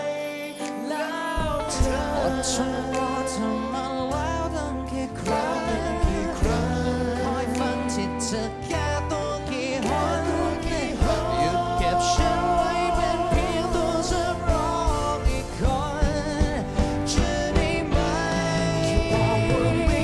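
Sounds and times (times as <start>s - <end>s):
steady drum beat: 1.4s - 3.2s, 5.2s - 7.9s, 9.8s - 20.0s.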